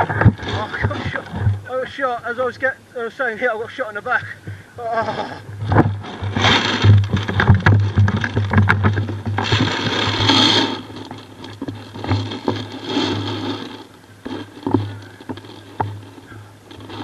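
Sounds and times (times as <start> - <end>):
rustling and scraping: 0.0 - 2.6, 4.4 - 17.0
knocks and clicks: 5.5 - 17.0.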